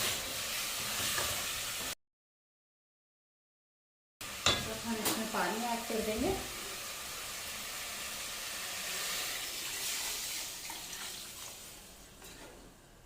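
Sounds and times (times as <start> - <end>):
water pouring into hot pot: 6.5 - 11.9.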